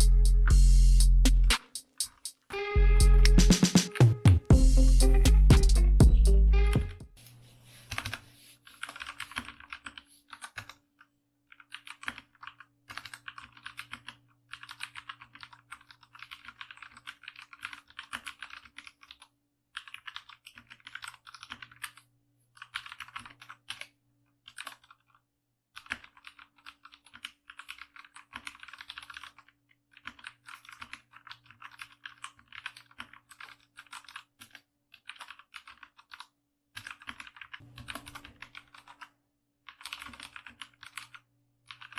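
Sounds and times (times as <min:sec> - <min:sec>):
mechanical keyboard typing: 0:11.5 - 0:22.0, 0:22.6 - 0:23.9, 0:25.8 - 0:39.1, 0:39.7 - 0:41.9.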